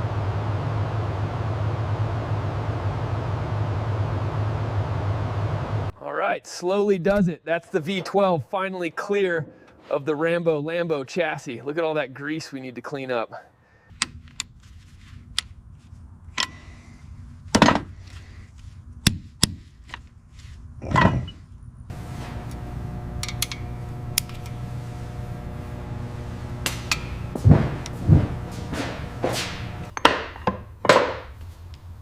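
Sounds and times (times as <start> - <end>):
steady mechanical hum: 0.0 - 6.0, 14.0 - 32.0
tool knocks and clanks: 17.6 - 17.9, 20.8 - 21.4, 26.6 - 31.4.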